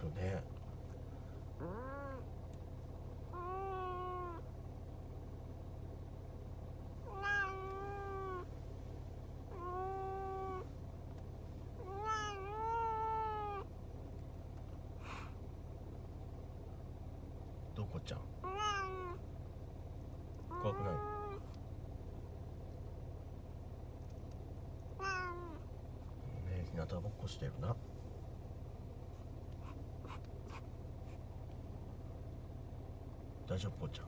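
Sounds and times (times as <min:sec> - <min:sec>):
steady low hum: 0:00.0 - 0:34.0
cat meowing: 0:01.6 - 0:02.3, 0:03.3 - 0:04.5, 0:07.0 - 0:08.5, 0:09.4 - 0:10.7, 0:11.8 - 0:13.7, 0:18.4 - 0:19.2, 0:20.5 - 0:21.6, 0:25.0 - 0:25.6.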